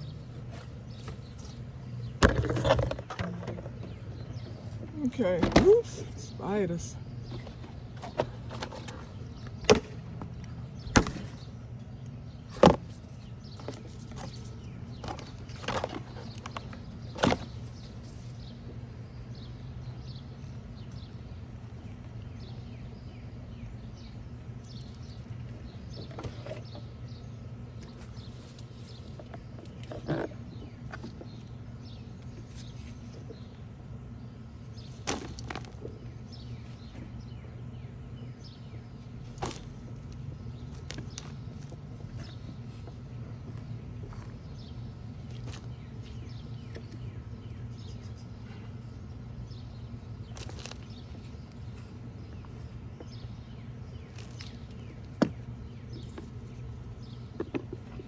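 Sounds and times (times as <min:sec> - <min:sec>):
steady low hum: 0:00.0 - 0:58.0
soil being dug by hand: 0:50.2 - 0:51.8.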